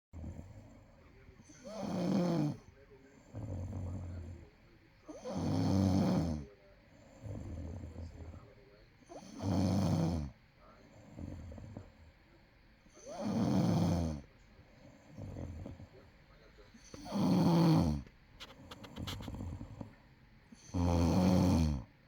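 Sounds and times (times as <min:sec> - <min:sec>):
person snoring: 0:01.5 - 0:02.6, 0:05.1 - 0:06.5, 0:09.2 - 0:10.3, 0:16.9 - 0:18.1, 0:20.6 - 0:21.9
soft breathing: 0:14.2 - 0:20.8.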